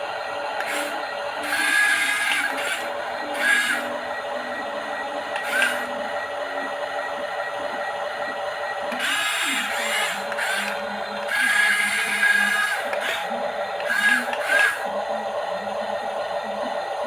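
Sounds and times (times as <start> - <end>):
toy electric motors whirring: 0.0 - 6.4, 8.8 - 14.9
high motor whine: 0.0 - 17.0
steady motor hum: 0.0 - 17.0.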